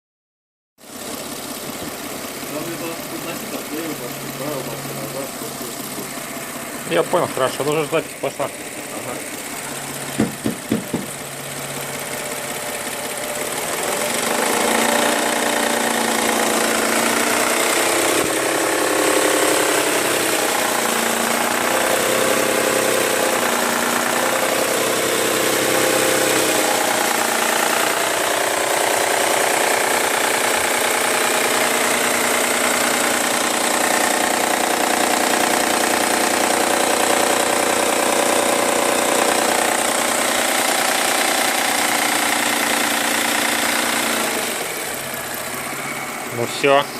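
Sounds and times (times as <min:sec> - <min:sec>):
engine running with a knock: 0:01.6 - 0:46.2
sharp engine bangs: 0:02.5 - 0:11.5.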